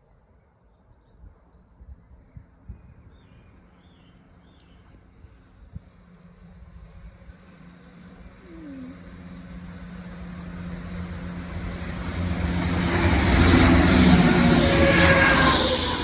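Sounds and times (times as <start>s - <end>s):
train engine and wheel noise: 0.0s - 16.0s.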